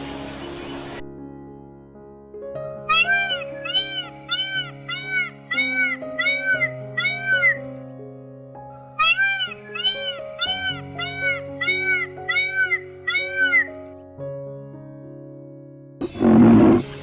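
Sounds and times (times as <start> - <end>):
background music: 0.0 - 8.0, 8.7 - 14.2
high animal calls: 2.9 - 7.6, 9.0 - 13.8, 16.0 - 17.0.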